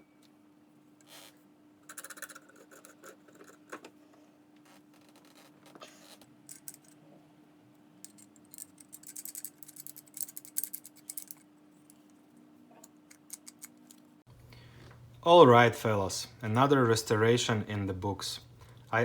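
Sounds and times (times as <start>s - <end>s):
faint steady hum: 0.0s - 19.0s
pipe wrench clicking and rattling: 13.1s - 14.0s.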